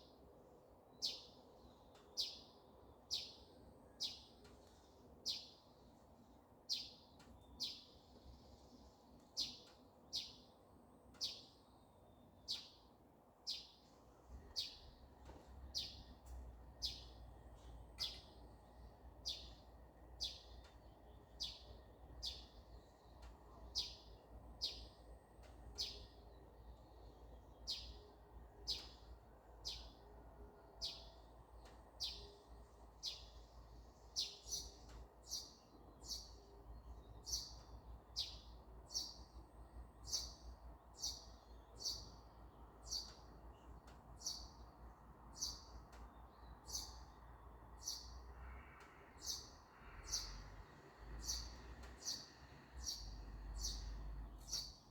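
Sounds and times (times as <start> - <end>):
songbird chirping: 0.0 - 54.9.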